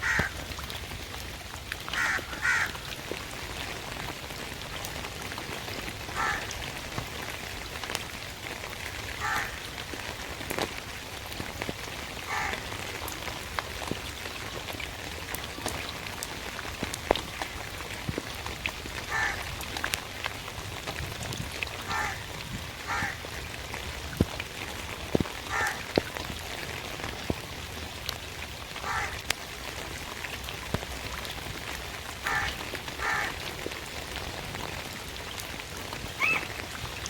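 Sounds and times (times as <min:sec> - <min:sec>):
raven calling: 0:00.0 - 0:00.4, 0:02.0 - 0:02.8, 0:06.2 - 0:06.5, 0:09.2 - 0:09.6, 0:12.3 - 0:12.6, 0:19.1 - 0:19.5, 0:21.9 - 0:22.2, 0:22.8 - 0:23.2, 0:25.5 - 0:25.9, 0:28.8 - 0:29.2, 0:32.2 - 0:33.4, 0:36.2 - 0:36.6
steady rain: 0:00.0 - 0:37.0
water dripping: 0:00.0 - 0:37.0.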